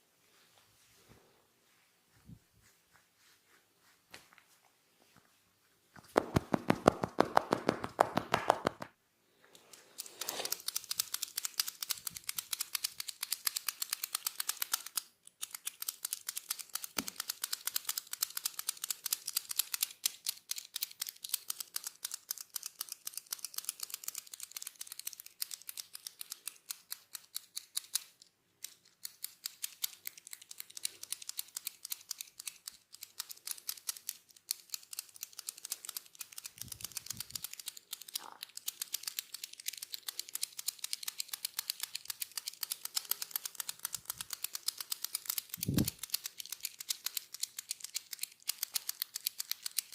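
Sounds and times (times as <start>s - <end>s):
hands tapping on head: 6.1s - 9.0s.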